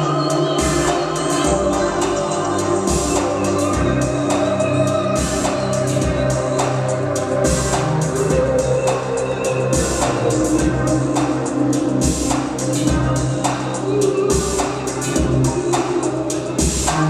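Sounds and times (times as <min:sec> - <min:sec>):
instrumental music: 0:00.0 - 0:17.0
steady drum kit beat: 0:00.0 - 0:17.0.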